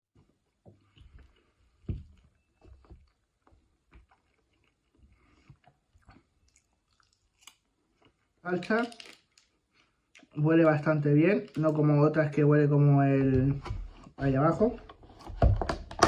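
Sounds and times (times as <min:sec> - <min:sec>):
person chewing food: 0:00.2 - 0:08.4, 0:09.0 - 0:10.4.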